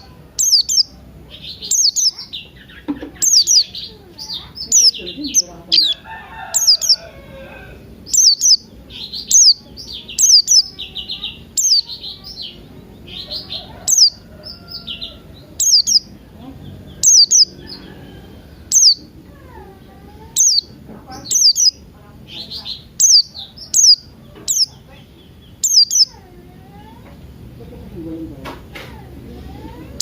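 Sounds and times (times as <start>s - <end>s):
soft background bird twittering: 0.0s - 30.0s
sharp high-pitched bird chirps: 0.4s - 7.1s, 8.0s - 16.2s, 16.9s - 19.1s, 20.4s - 26.2s.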